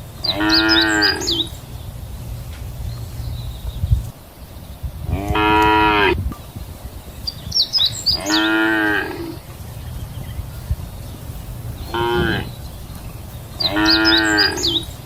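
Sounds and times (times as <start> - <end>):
cow mooing: 0.3 - 1.5, 5.1 - 6.2, 8.2 - 9.4, 11.9 - 12.6, 13.6 - 14.9.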